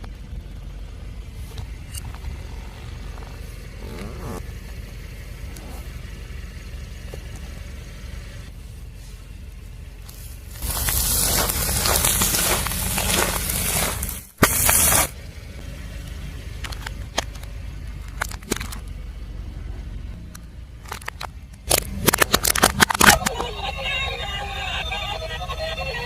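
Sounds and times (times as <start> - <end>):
tyre crushing brittle objects: 10.2 - 15.1
short loud hiss: 13.6 - 15.1.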